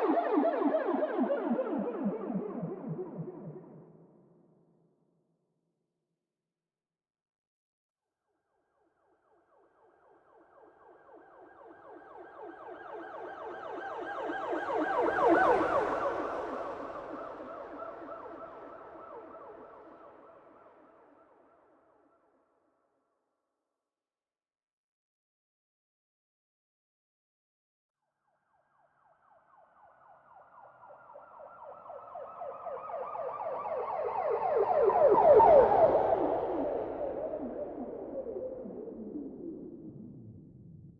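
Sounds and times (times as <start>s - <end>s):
police siren yelp: 29.1s - 38.4s.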